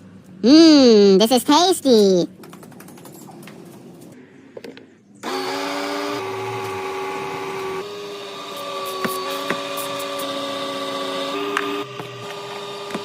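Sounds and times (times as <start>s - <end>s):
power tool motor whining: 5.2s - 13.0s.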